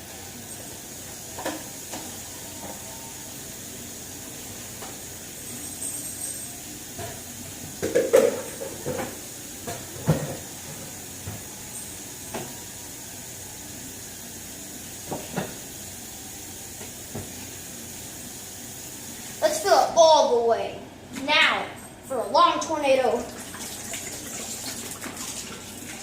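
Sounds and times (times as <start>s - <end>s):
faucet running into plastic bottle: 23.2s - 26.0s.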